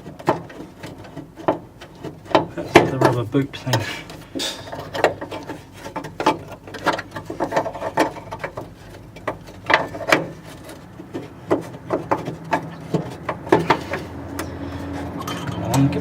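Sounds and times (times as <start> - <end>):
hand tools clinking on metal: 11.6 - 16.0.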